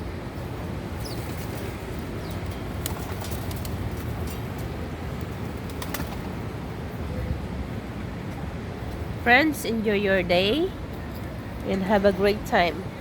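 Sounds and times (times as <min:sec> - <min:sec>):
pigeons and small birds: 0:00.1 - 0:07.4.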